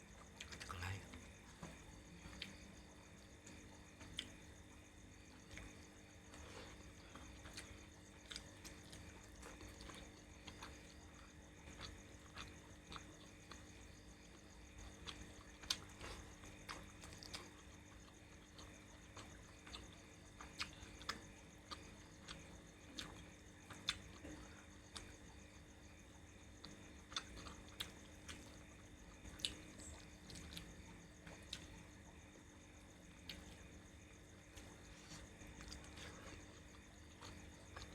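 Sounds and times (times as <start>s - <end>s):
wet mouth chewing smacks: 20.4s - 25.1s, 29.3s - 31.7s.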